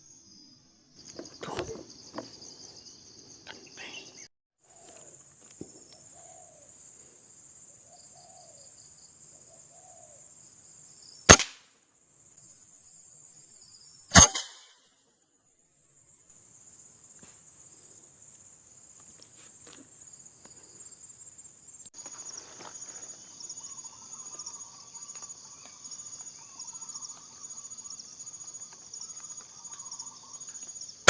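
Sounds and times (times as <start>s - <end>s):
drone of insects: 0.0s - 31.0s
air rifle shots: 11.3s - 11.6s, 14.1s - 14.8s.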